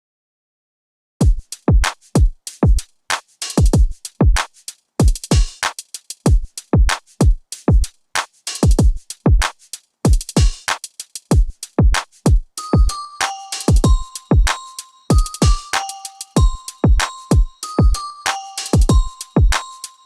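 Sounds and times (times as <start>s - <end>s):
electronic music with beat: 3.4s - 7.9s, 8.5s - 20.0s.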